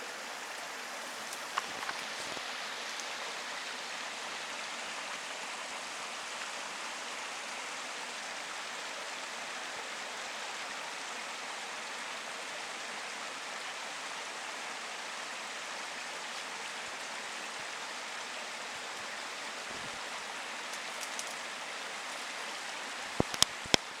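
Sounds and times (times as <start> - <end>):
stream rushing over rocks: 0.0 - 24.0
sharp clicks: 23.2 - 23.9.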